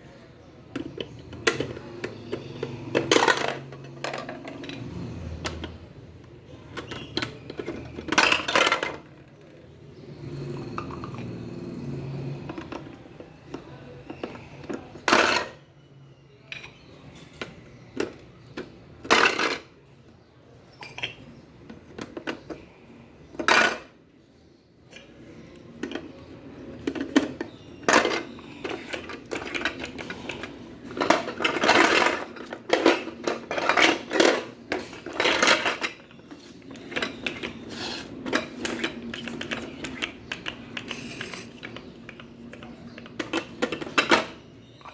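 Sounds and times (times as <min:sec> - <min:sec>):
plastic toy pieces clattering: 0:00.7 - 0:09.7, 0:12.4 - 0:15.6, 0:17.1 - 0:19.9, 0:23.3 - 0:24.0, 0:25.0 - 0:44.5.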